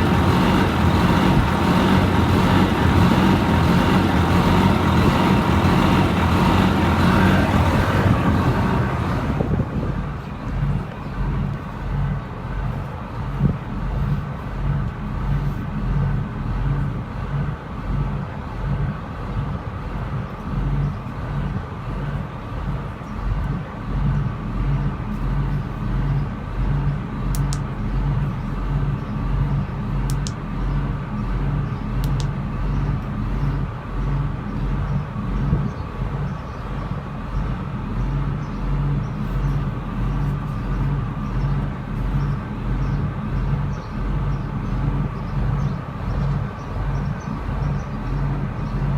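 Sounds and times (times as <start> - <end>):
diesel engine idling: 0.0 - 48.9.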